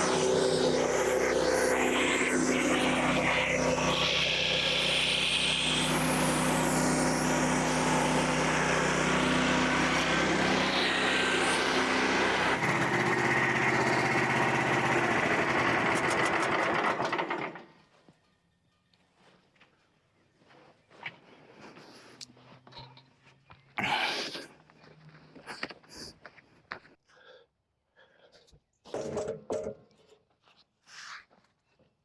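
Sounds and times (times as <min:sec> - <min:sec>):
sawmill engine running: 0:00.0 - 0:17.8.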